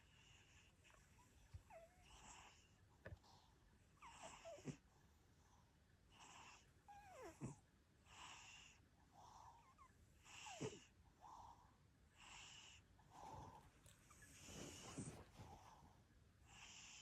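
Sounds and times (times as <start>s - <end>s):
cat snoring softly: 1.6s - 2.8s, 4.0s - 4.8s, 6.1s - 11.6s, 12.2s - 17.0s.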